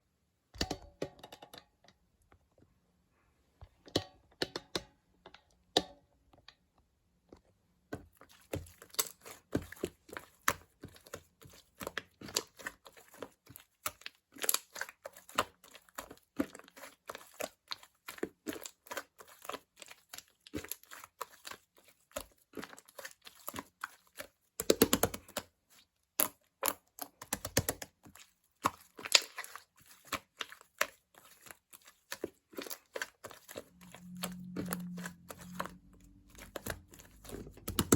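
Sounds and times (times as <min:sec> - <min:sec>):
plastic crinkling and tearing: 0:30.2 - 0:37.9.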